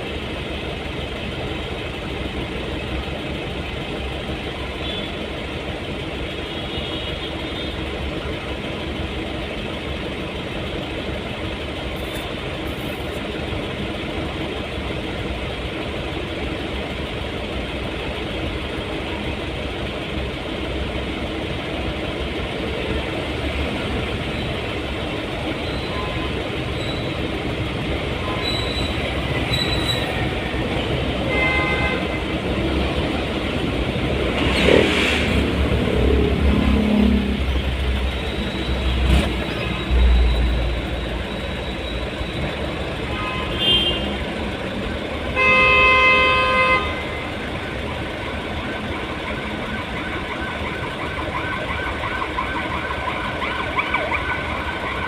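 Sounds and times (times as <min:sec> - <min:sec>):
vehicle engine and road noise: 0:00.0 - 0:55.0
car horn toot: 0:06.5 - 0:07.8, 0:31.2 - 0:32.3, 0:43.1 - 0:44.2, 0:45.3 - 0:47.2.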